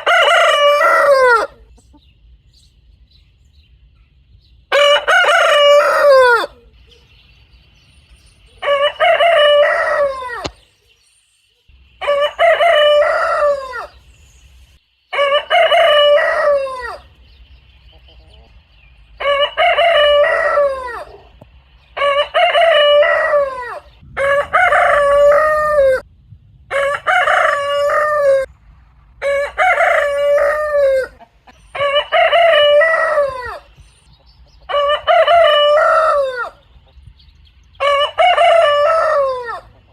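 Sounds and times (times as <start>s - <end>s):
rooster crowing: 0.0s - 1.7s, 4.7s - 6.7s, 8.6s - 10.6s, 12.0s - 14.0s, 15.1s - 17.1s, 19.2s - 21.3s, 22.0s - 26.0s, 26.7s - 28.5s, 29.2s - 33.7s, 34.7s - 36.6s, 37.8s - 39.8s.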